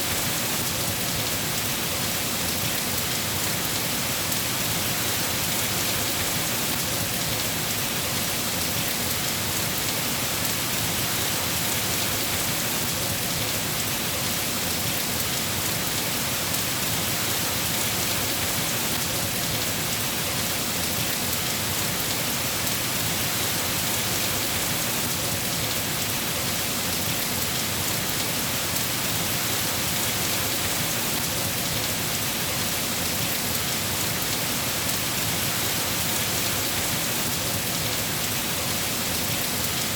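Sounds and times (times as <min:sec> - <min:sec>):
rain hissing on a surface: 0:00.0 - 0:39.9.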